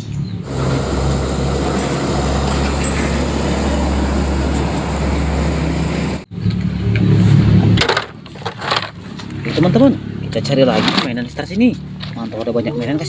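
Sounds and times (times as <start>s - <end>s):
road vehicle engine rumble: 0.0s - 13.0s
tyre hiss: 0.4s - 6.2s.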